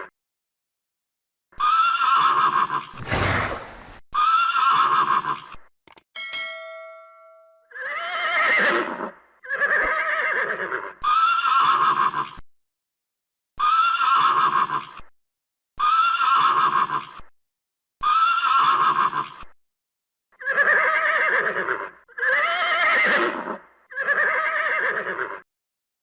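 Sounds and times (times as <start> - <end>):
horse whinnying: 1.6 - 5.6, 7.7 - 12.4, 13.6 - 15.0, 15.8 - 17.2, 18.0 - 19.5, 20.4 - 25.4
short ringing chime: 6.2 - 7.8.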